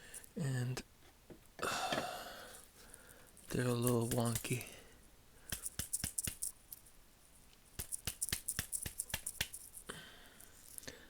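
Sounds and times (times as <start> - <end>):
small metal parts clicking: 5.5 - 6.9, 7.8 - 10.9.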